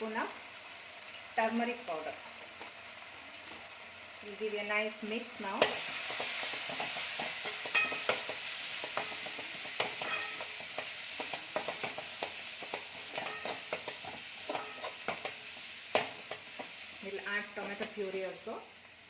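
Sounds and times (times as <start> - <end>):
masala sizzling in oil: 0.0 - 19.0
utensil scraping a pan: 5.6 - 16.7.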